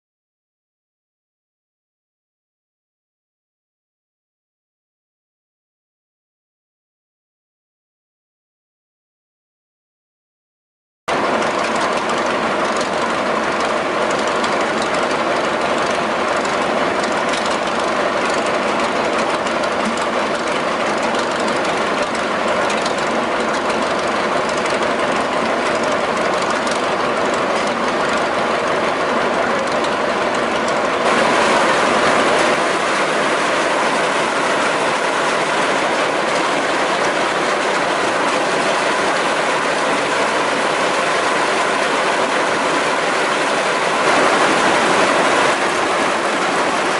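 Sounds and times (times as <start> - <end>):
engine running with rhythmic clatter: 11.1 - 46.9.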